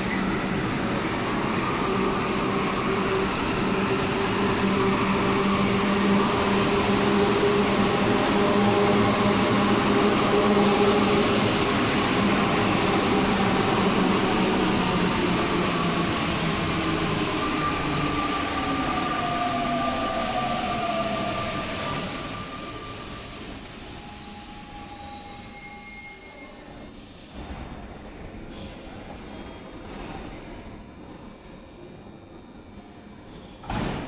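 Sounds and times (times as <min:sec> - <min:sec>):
train running noise and whine: 0:00.0 - 0:34.0
train brake squeal: 0:17.6 - 0:27.2, 0:28.6 - 0:29.8.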